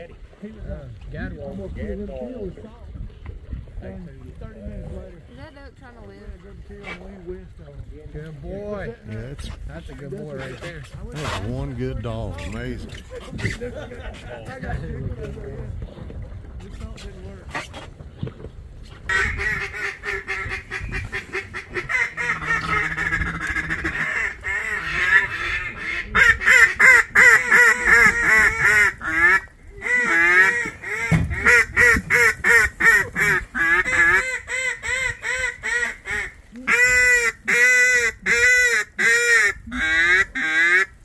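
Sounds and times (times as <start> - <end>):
duck quacking: 19.1 - 41.0.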